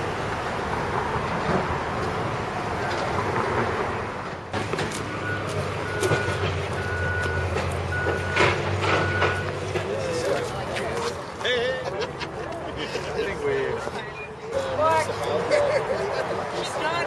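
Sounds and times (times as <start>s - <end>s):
truck engine running: 4.5s - 11.4s
reversing alarm beeps: 5.2s - 9.5s, 14.0s - 14.4s.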